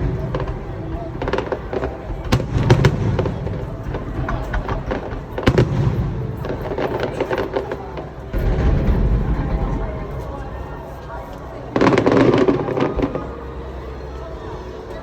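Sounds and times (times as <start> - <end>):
fireworks cracking: 0.0 - 10.8.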